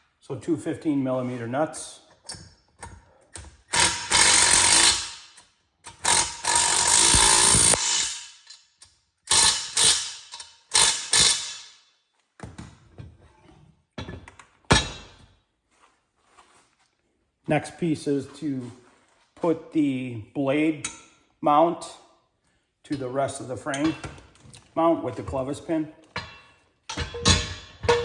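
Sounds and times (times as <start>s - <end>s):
power tool tightening nuts: 3.7s - 8.6s, 9.3s - 11.6s.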